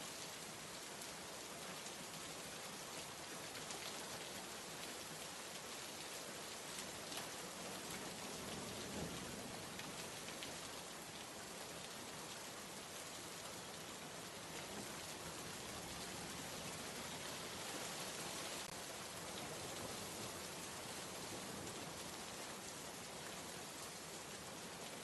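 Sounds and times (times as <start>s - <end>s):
steady rain falling: 0.0s - 25.0s.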